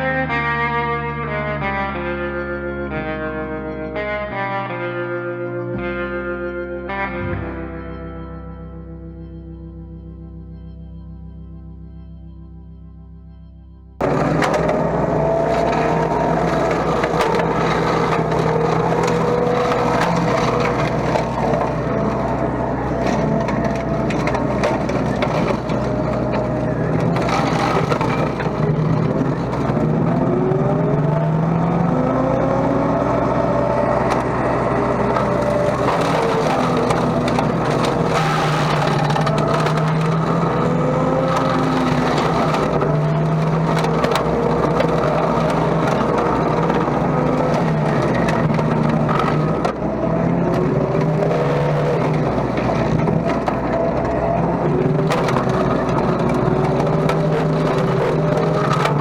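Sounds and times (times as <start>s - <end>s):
crackling and splintering stems: 14.0s - 59.0s
excavator engine and hydraulic drone: 14.0s - 59.0s.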